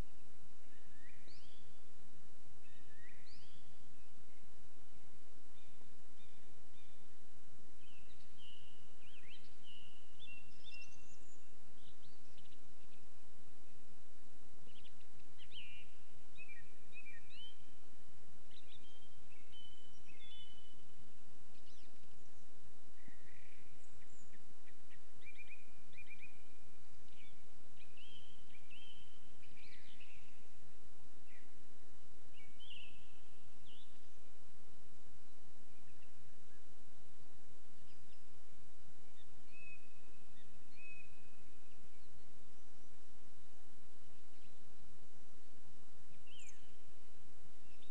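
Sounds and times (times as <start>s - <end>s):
birds singing: 0.0s - 1.9s, 2.6s - 4.5s, 7.8s - 13.1s, 18.5s - 30.5s, 32.4s - 34.3s, 46.1s - 46.9s
steady background hiss: 0.0s - 47.9s.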